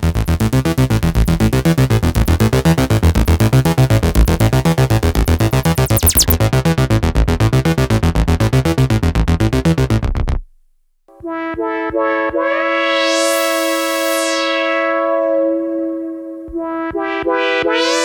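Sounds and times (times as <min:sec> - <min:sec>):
synthesizer pulsing sequence: 0:02.6 - 0:06.8, 0:11.2 - 0:18.0
synthesizer sustained chord: 0:11.3 - 0:18.0.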